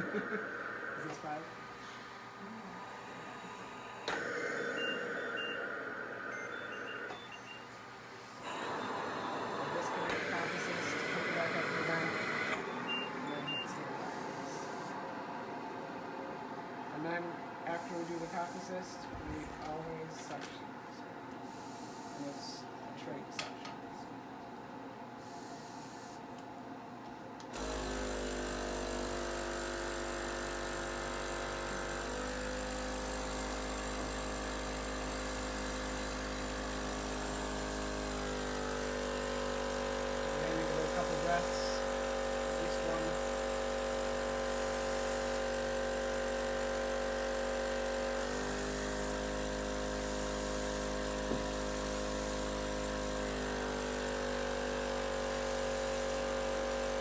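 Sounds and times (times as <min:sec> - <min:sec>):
suction pump motor humming: 0:00.0 - 0:07.2, 0:27.6 - 0:57.0.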